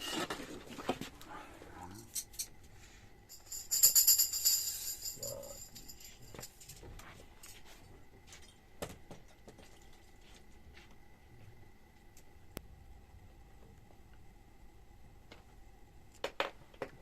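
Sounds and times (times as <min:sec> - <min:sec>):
metal percussion jingles: 0:03.3 - 0:06.8.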